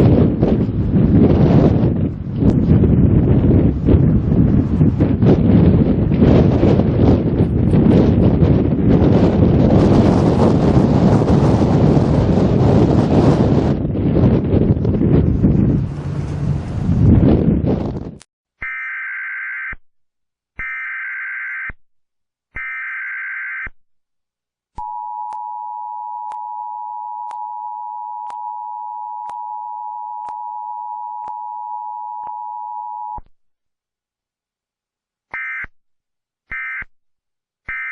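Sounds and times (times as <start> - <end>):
wind buffeting microphone: 0.0 - 18.2
data tone bursts: 18.6 - 19.8, 20.6 - 21.8, 22.6 - 23.7
two-tone attention signal: 24.8 - 33.2.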